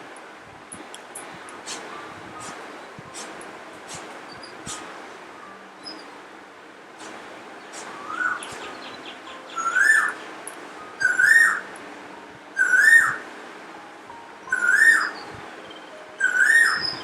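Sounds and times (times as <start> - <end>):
parrot calling: 8.0 - 10.2, 12.6 - 13.2, 14.5 - 15.2, 16.2 - 17.0.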